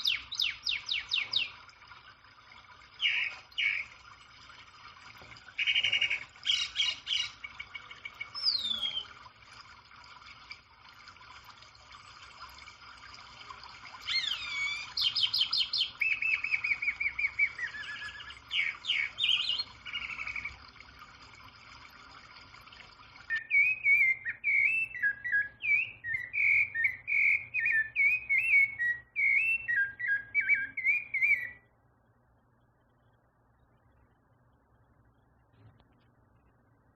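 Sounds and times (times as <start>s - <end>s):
songbirds whistling and chirping: 0.0s - 1.7s, 2.9s - 4.0s, 5.6s - 9.3s, 13.9s - 20.7s, 23.2s - 31.7s
bird warbling song: 0.0s - 2.2s, 2.8s - 4.0s, 5.4s - 9.3s, 13.9s - 20.8s, 23.2s - 31.7s.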